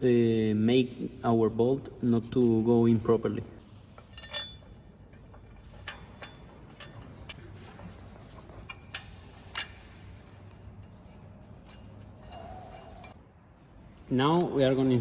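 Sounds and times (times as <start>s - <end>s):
low steady hum: 0.0s - 14.1s
metal tool clicks and clinks: 4.0s - 4.8s.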